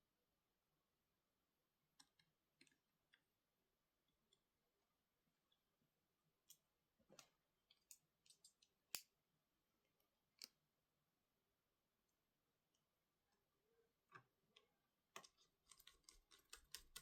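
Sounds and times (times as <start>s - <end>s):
small parts and tools clicking: 7.2s - 9.1s, 14.1s - 17.0s.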